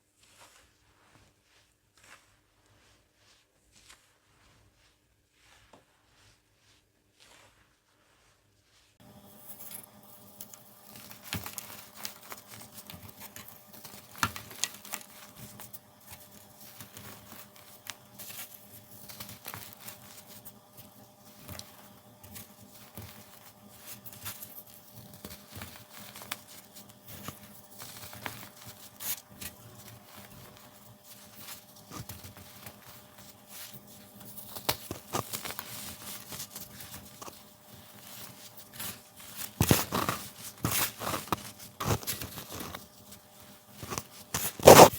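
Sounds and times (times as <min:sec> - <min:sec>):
baking soda chunks crunching: 0:09.0 - 0:44.9.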